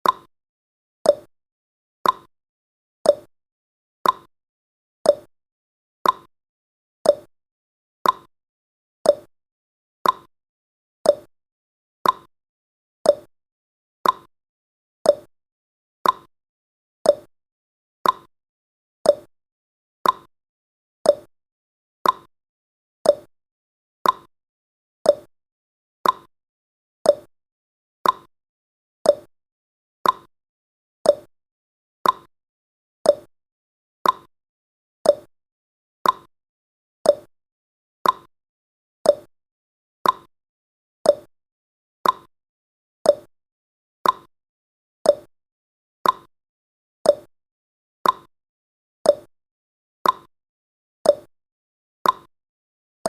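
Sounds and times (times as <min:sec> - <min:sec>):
clock ticking: 0:32.0 - 0:32.3, 0:34.0 - 0:34.3, 0:38.0 - 0:38.3, 0:40.0 - 0:40.3, 0:42.0 - 0:42.3, 0:46.0 - 0:46.3.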